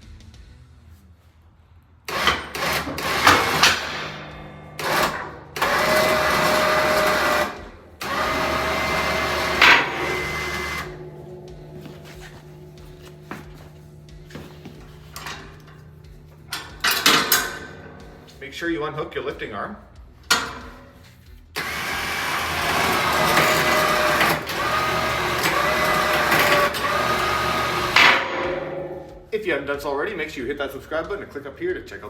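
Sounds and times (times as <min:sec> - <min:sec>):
electric winch running: 0:02.1 - 0:18.4, 0:21.6 - 0:29.2
metal clunks of plow: 0:03.2 - 0:18.4, 0:20.3 - 0:20.9
quiet steady hum: 0:07.7 - 0:21.5.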